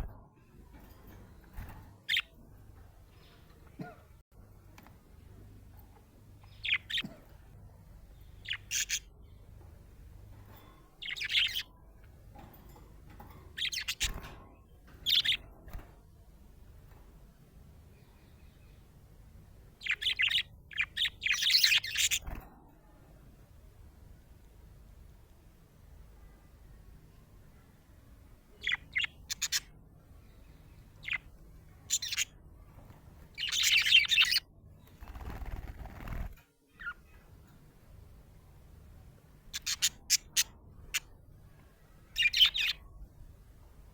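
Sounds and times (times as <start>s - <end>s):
rapid bird chatter: 1.6s - 2.4s, 6.4s - 7.1s, 8.2s - 9.2s, 10.8s - 11.8s, 13.5s - 14.4s, 15.0s - 15.5s, 19.8s - 22.4s, 28.6s - 32.4s, 33.2s - 37.3s, 39.5s - 41.1s, 42.0s - 42.9s
budgerigar chirping: 8.4s - 9.0s, 28.6s - 29.7s, 31.9s - 32.3s, 33.4s - 34.4s, 39.5s - 41.1s, 42.2s - 42.8s.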